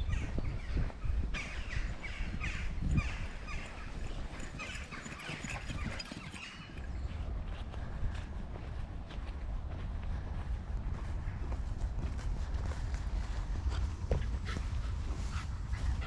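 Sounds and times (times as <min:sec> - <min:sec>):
birds chirping and calling: 0:00.0 - 0:07.3.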